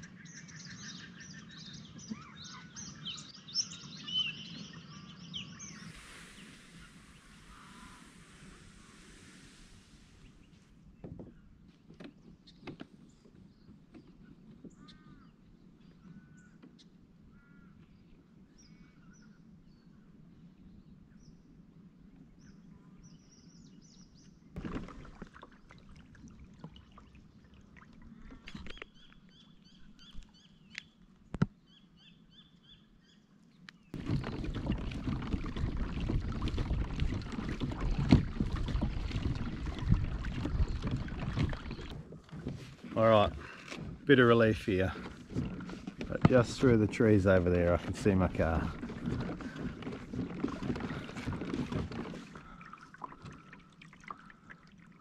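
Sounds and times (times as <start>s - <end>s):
birds chirping softly: 0.0s - 24.6s, 25.2s - 55.0s.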